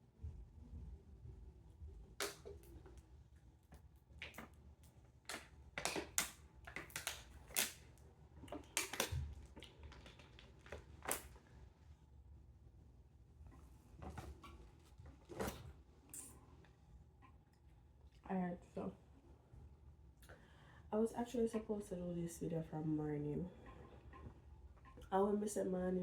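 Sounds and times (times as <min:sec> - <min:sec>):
objects clicking and tapping: 0:05.3 - 0:07.8, 0:08.5 - 0:11.3.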